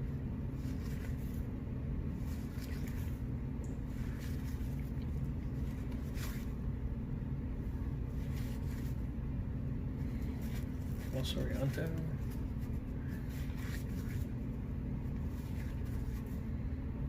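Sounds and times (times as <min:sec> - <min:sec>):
steady low hum: 0:00.0 - 0:17.0
cards being flipped through: 0:05.6 - 0:06.5, 0:10.2 - 0:14.3.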